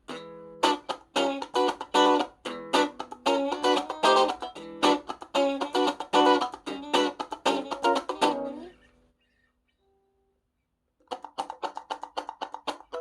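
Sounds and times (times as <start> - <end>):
clean electric guitar: 0.0 - 8.8.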